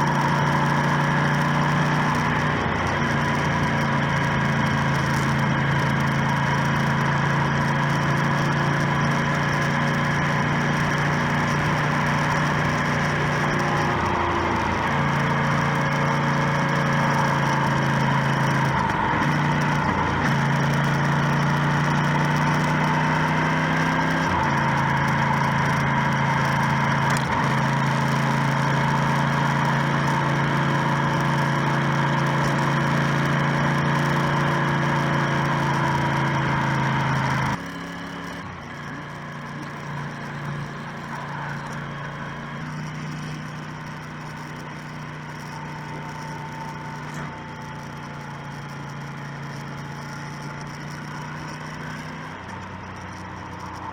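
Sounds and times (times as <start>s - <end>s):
motorcycle engine running: 0.0s - 53.9s
wind and road noise: 0.0s - 53.9s.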